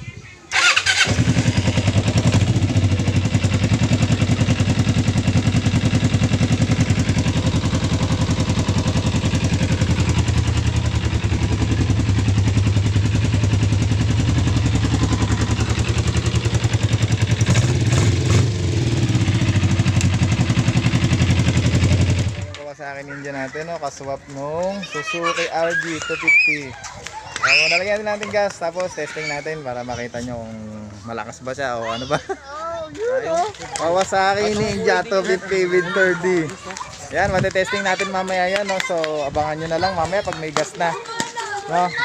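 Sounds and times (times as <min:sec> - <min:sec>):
two-stroke engine running: 0:00.5 - 0:22.6.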